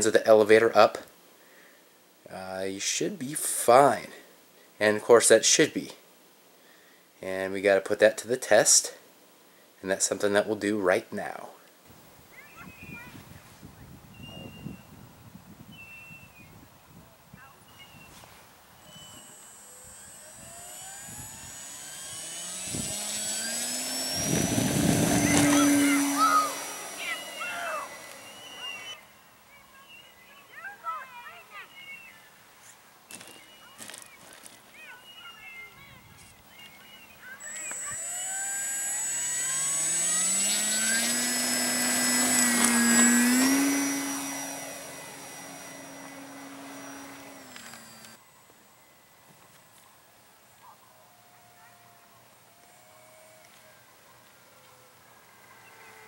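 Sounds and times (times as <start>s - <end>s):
electric motor and propeller whine: 17.4s - 29.2s, 36.5s - 56.0s.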